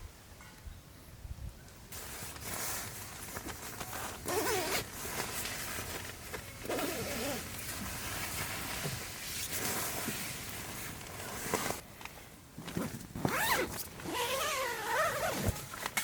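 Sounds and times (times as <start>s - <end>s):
rasping rustling noise: 1.9s - 11.8s.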